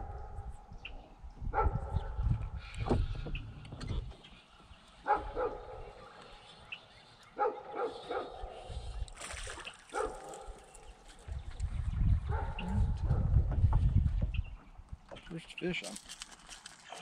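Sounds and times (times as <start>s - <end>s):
dog barking: 1.6s - 2.0s, 5.0s - 6.0s, 7.4s - 8.5s, 9.9s - 10.5s, 12.3s - 13.3s.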